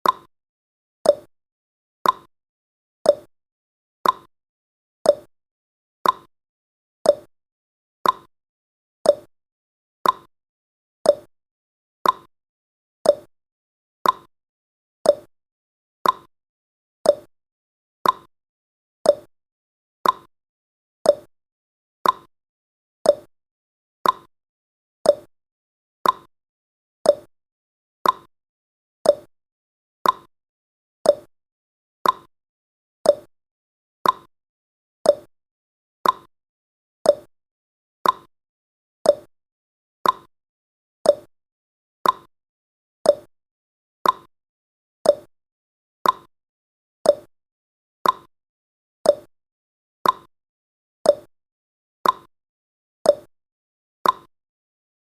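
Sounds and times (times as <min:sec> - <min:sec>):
timer ticking: 0:00.0 - 0:00.3, 0:01.1 - 0:01.3, 0:02.0 - 0:02.3, 0:03.1 - 0:03.3, 0:04.0 - 0:04.3, 0:05.1 - 0:05.3, 0:06.0 - 0:06.3, 0:07.1 - 0:07.3, 0:08.0 - 0:08.3, 0:09.1 - 0:09.3, 0:10.0 - 0:10.3, 0:11.1 - 0:11.3, 0:12.0 - 0:12.3, 0:13.1 - 0:13.3, 0:14.0 - 0:14.3, 0:15.1 - 0:15.3, 0:16.0 - 0:16.3, 0:17.1 - 0:17.3, 0:18.0 - 0:18.3, 0:19.1 - 0:19.3, 0:20.0 - 0:20.3, 0:21.1 - 0:21.3, 0:22.0 - 0:22.3, 0:23.1 - 0:23.3, 0:24.0 - 0:24.3, 0:25.1 - 0:25.3, 0:26.0 - 0:26.3, 0:27.1 - 0:27.3, 0:28.0 - 0:28.3, 0:29.0 - 0:29.3, 0:30.0 - 0:30.3, 0:31.0 - 0:31.3, 0:32.0 - 0:32.3, 0:33.1 - 0:33.3, 0:34.0 - 0:34.3, 0:35.1 - 0:35.3, 0:36.0 - 0:36.3, 0:37.1 - 0:37.3, 0:38.0 - 0:38.3, 0:39.1 - 0:39.3, 0:40.0 - 0:40.3, 0:41.1 - 0:41.3, 0:42.0 - 0:42.3, 0:43.1 - 0:43.3, 0:44.0 - 0:44.3, 0:45.1 - 0:45.3, 0:46.0 - 0:46.3, 0:47.1 - 0:47.3, 0:48.0 - 0:48.3, 0:49.1 - 0:49.3, 0:50.0 - 0:50.3, 0:51.1 - 0:51.3, 0:52.0 - 0:52.3, 0:53.1 - 0:53.3, 0:54.0 - 0:54.3.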